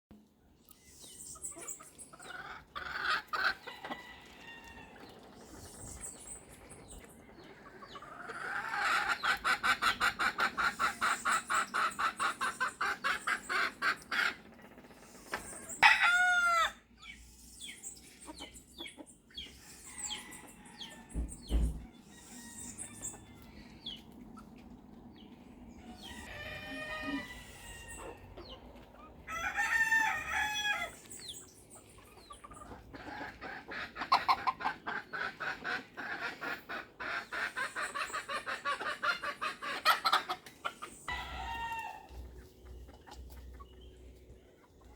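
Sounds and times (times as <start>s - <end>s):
chickens clucking: 0.2s - 44.9s
roosters crowing: 2.2s - 5.3s, 15.3s - 16.9s, 19.7s - 23.7s, 25.7s - 31.2s, 41.1s - 42.4s.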